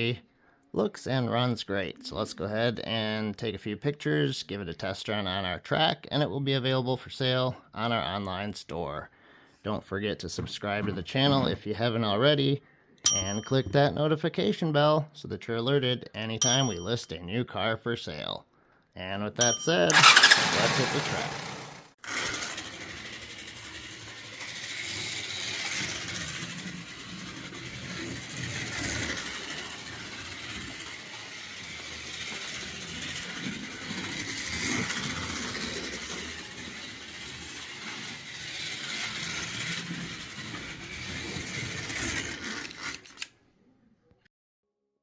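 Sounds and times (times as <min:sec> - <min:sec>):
slot car motor whirring: 0:19.6 - 0:43.3.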